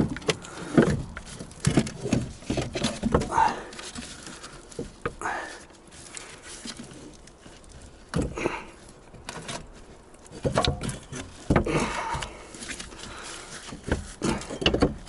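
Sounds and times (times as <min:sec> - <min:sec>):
metal parts knocking and scraping: 0:10.3 - 0:12.4.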